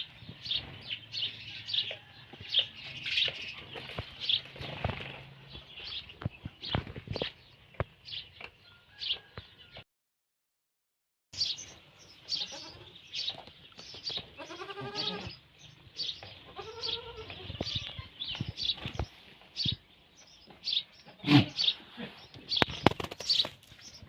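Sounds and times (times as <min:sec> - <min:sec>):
goat bleating: 0:12.4 - 0:13.0, 0:14.4 - 0:15.4, 0:16.4 - 0:18.2.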